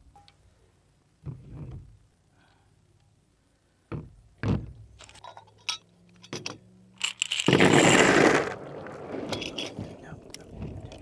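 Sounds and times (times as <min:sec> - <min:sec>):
small hard objects clinking: 0:07.0 - 0:08.6.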